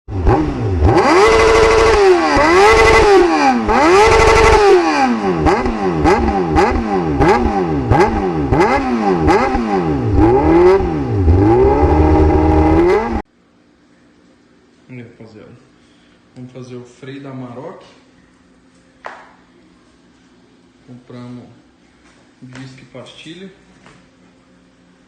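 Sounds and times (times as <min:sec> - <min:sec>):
engine revving: 0:00.1 - 0:13.2.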